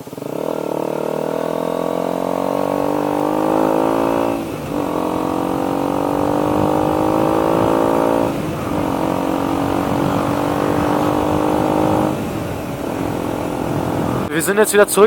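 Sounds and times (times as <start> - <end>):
motorcycle engine accelerating: 0.0 - 14.3.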